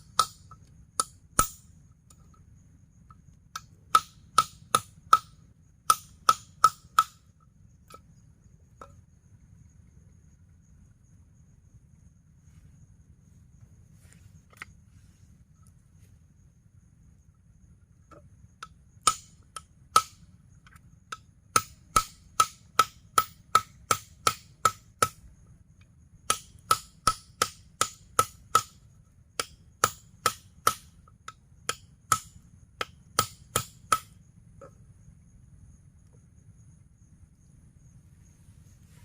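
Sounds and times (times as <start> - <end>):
sharp ringing chopping strikes: 0.0 - 1.7, 3.6 - 5.3, 5.9 - 7.2, 19.0 - 20.2, 21.5 - 25.2, 26.3 - 28.8, 29.4 - 30.9, 31.7 - 34.2
high insect whine: 0.0 - 39.0.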